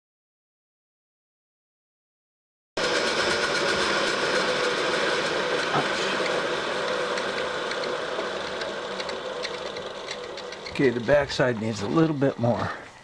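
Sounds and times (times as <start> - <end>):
milling machine cutting metal: 2.8 - 13.0.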